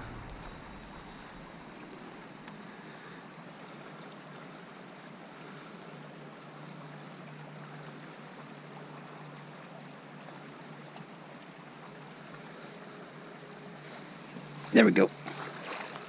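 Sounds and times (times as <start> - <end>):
low steady hum: 0.0 - 3.7.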